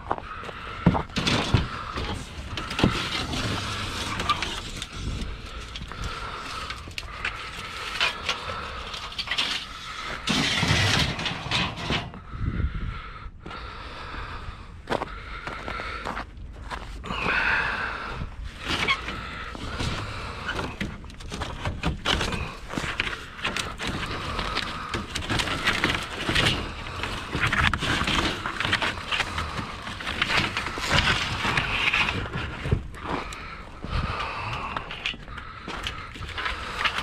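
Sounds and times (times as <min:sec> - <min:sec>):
steady low rumble: 0:00.0 - 0:37.0
scrap metal clanking: 0:06.6 - 0:12.2.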